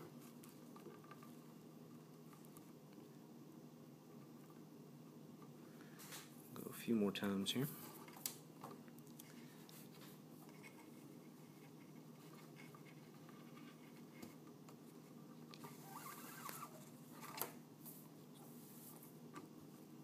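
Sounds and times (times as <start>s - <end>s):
low room hum: 0.0s - 20.0s
cord rustling and scraping: 9.2s - 19.5s.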